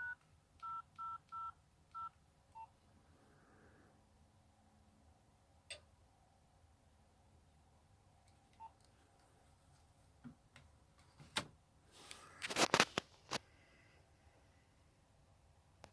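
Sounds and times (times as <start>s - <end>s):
rustling of phone handling: 11.0s - 13.4s.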